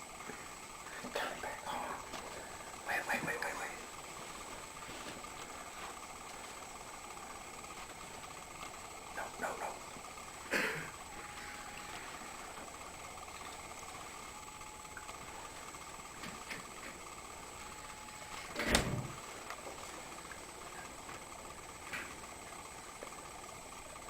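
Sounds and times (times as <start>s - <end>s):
steady background hum: 0.0s - 24.0s.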